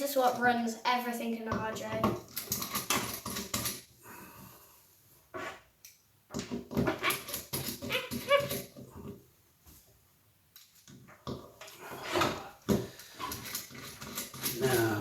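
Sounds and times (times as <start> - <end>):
dog whining and yelping: 7.8 - 8.7.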